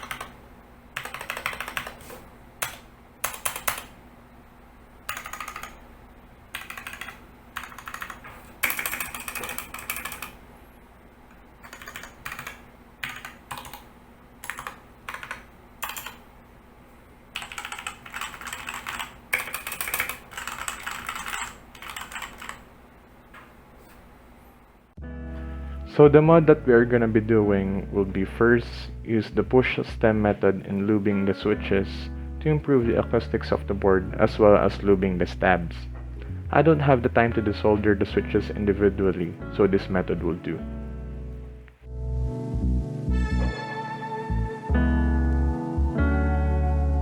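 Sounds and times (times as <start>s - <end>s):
mechanical keyboard typing: 0.0s - 0.4s, 1.0s - 3.9s, 5.1s - 5.8s, 6.5s - 10.4s, 11.6s - 16.2s, 17.4s - 22.7s.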